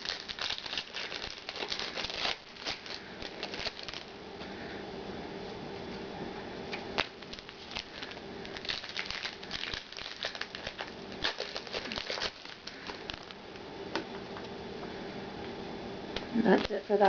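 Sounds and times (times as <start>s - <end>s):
packaging crinkling: 0.0s - 4.2s, 7.0s - 13.4s
faint steady hum: 0.0s - 17.0s.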